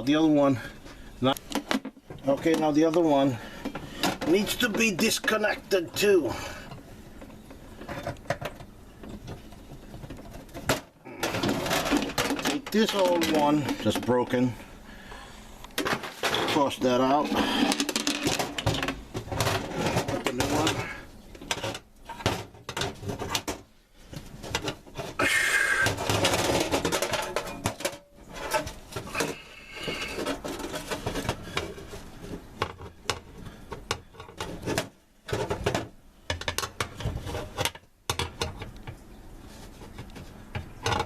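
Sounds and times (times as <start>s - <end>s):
rustling scrape: 15.8s - 20.8s, 24.0s - 32.6s, 39.4s - 40.4s.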